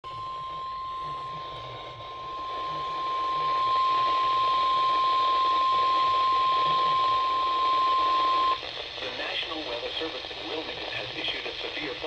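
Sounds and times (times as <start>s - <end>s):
steady high alarm tone: 0.0s - 8.6s
radio static: 0.2s - 12.0s.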